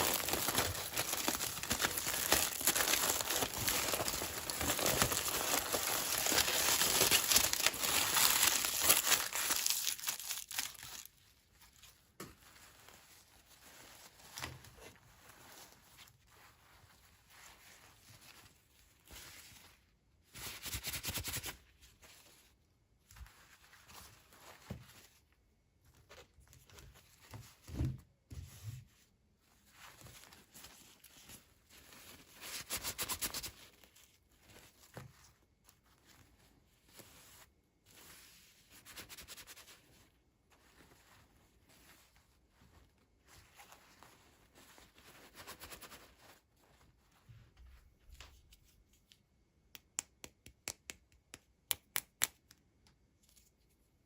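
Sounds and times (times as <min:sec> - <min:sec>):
packaging being torn open: 0:00.0 - 0:11.0.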